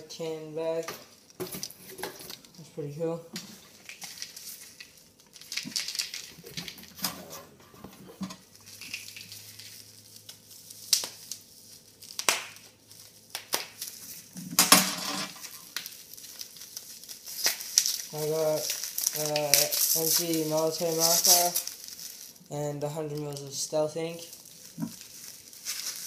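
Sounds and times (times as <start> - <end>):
rustle or scrape: 18.1 - 22.4.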